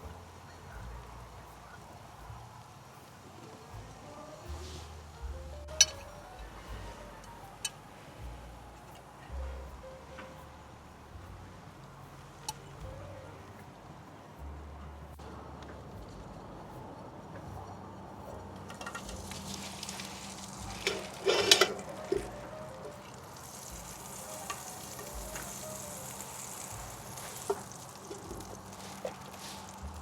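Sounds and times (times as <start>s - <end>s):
food sizzling in a pan: 18.8s - 30.0s.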